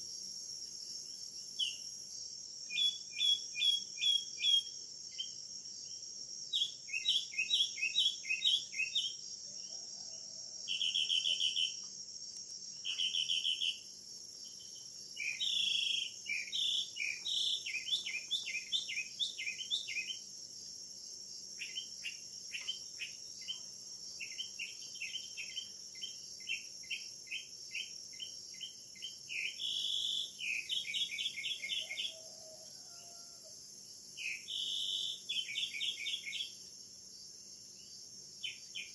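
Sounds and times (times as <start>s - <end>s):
high-pitched insect hum: 0.0s - 38.9s
short repeated chirping calls: 10.7s - 11.9s, 12.8s - 13.8s.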